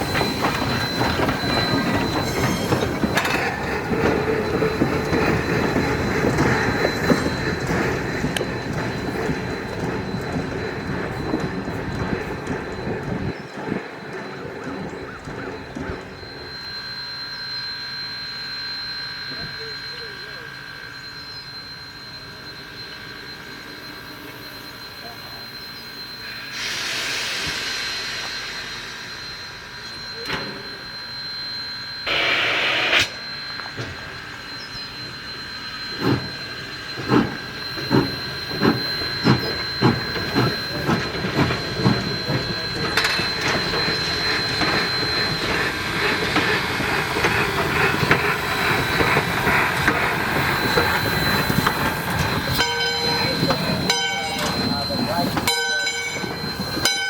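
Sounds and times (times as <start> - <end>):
steam locomotive exhaust chuffs: 0.0 - 57.0
burst of steam: 26.2 - 30.1.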